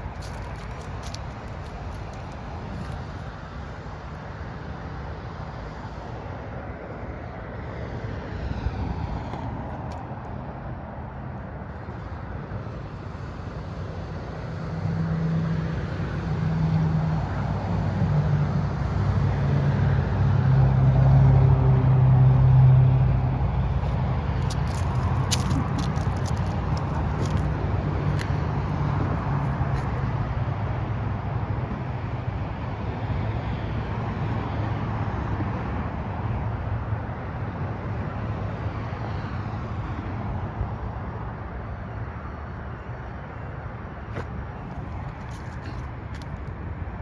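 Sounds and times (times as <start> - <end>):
vehicle engine running: 23.7 - 32.0.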